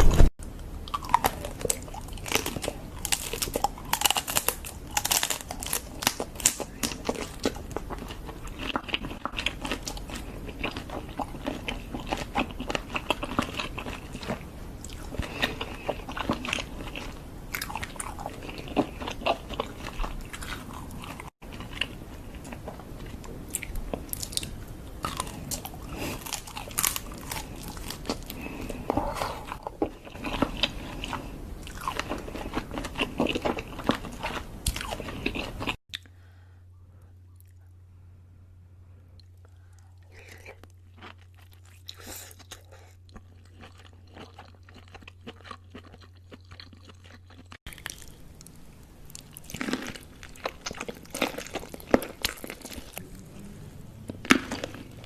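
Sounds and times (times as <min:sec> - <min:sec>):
crunching and chewing food: 0:00.0 - 0:36.1, 0:38.9 - 0:55.0
faint low hum: 0:00.0 - 0:55.0.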